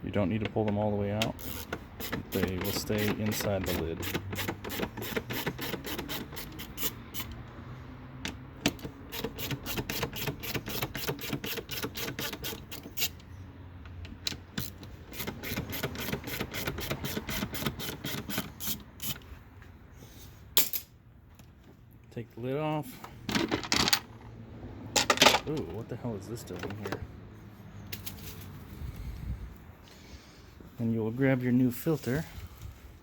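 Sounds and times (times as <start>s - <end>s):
ratcheting screwdriver clicking: 1.2s - 7.4s.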